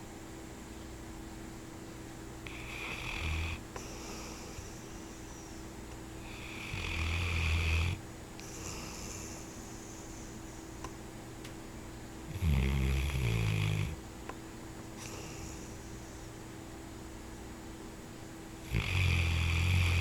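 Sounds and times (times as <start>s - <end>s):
dog snoring: 2.4s - 4.8s, 6.2s - 10.3s, 12.3s - 14.0s, 15.0s - 16.2s, 18.6s - 20.0s
dog breathing: 2.5s - 10.8s, 15.0s - 16.4s.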